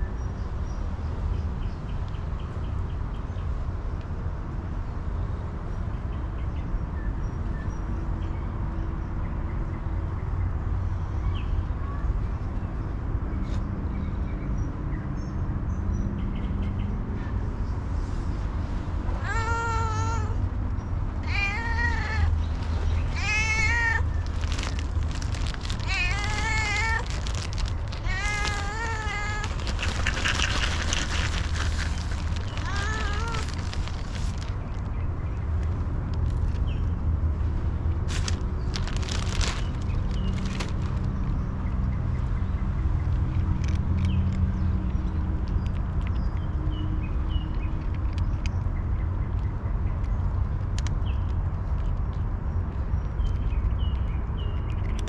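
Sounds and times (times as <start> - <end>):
cat meowing: 19.2 - 20.4, 21.2 - 22.4, 23.0 - 24.2, 25.8 - 30.0, 32.5 - 33.6.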